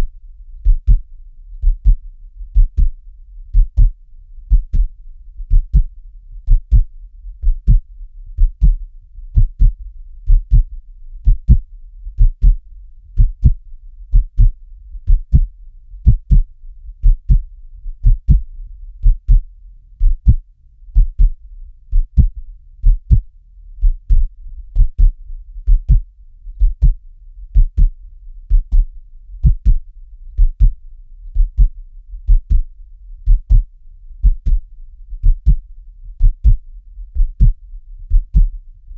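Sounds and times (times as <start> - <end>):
heartbeat thumping: 0.0 - 29.8, 30.4 - 35.6, 36.2 - 38.6.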